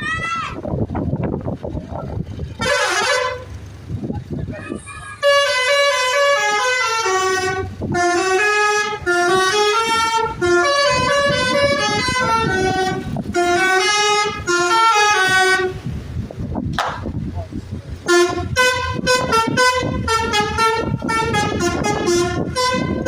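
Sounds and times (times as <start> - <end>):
bus musical air horn tune: 2.6 - 3.6, 5.2 - 15.9, 18.0 - 23.0.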